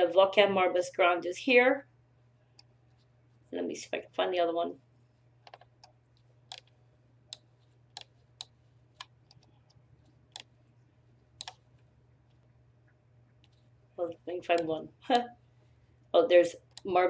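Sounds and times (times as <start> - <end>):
faint electrical hum: 0.0 - 17.0
computer mouse clicking: 5.4 - 10.6, 11.2 - 12.5, 13.4 - 13.7, 16.6 - 16.9.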